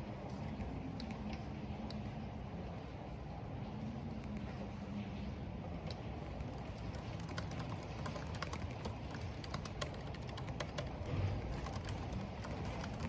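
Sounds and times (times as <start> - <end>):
wind and rain: 0.0 - 13.0
keyboard typing clicks: 6.5 - 13.0.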